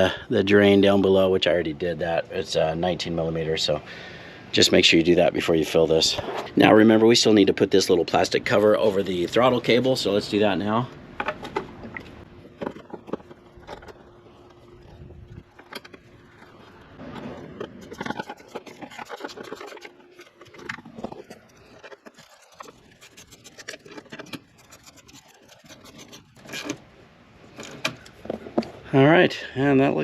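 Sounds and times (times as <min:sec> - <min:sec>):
faint steady hum: 0:00.0 - 0:30.0
scraping and clicks of parts: 0:11.2 - 0:26.9, 0:27.5 - 0:28.8.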